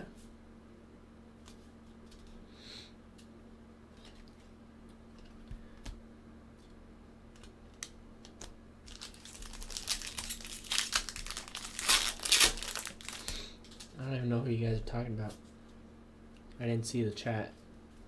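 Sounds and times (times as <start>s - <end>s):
foil wrapper crinkling: 8.4s - 14.0s.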